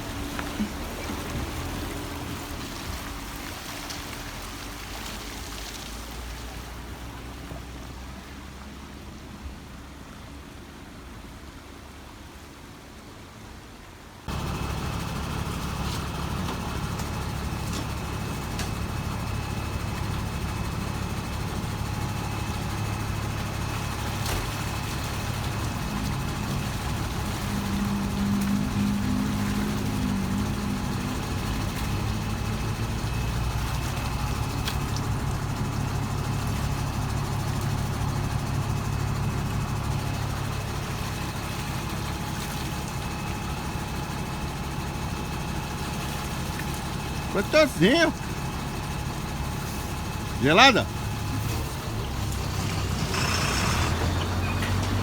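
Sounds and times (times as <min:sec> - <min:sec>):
vehicle engine running: 0:14.3 - 0:55.0.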